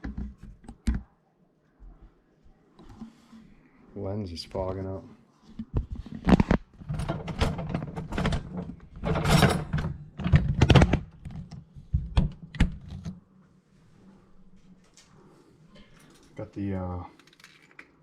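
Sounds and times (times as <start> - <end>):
hard objects clicking and knocking: 5.6 - 13.1.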